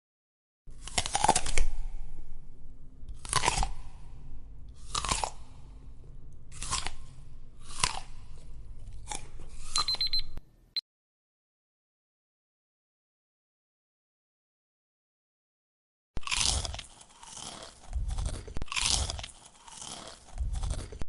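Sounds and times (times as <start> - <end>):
person chewing crunchy food: 0.7 - 2.1, 3.1 - 10.1, 16.2 - 21.0.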